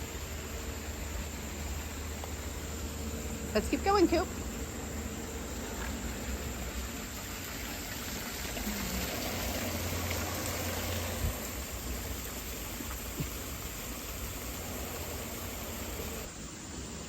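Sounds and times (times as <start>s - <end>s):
rushing waterfall: 6.7s - 16.3s.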